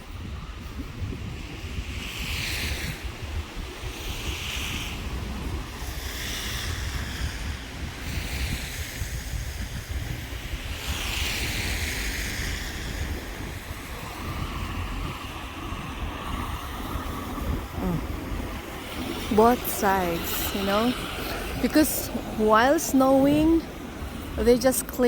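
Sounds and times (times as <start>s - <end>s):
wind buffeting microphone: 0.0s - 25.0s.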